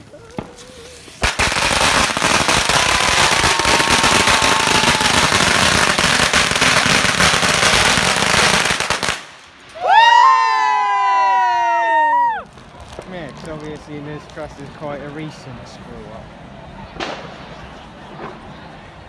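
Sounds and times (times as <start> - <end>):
firecracker bangs crackling: 0.4 - 10.3, 16.9 - 19.0.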